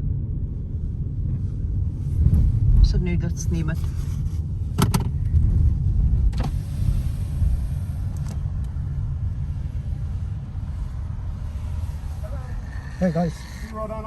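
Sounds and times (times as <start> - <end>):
car rumble from inside cabin: 0.0 - 14.0.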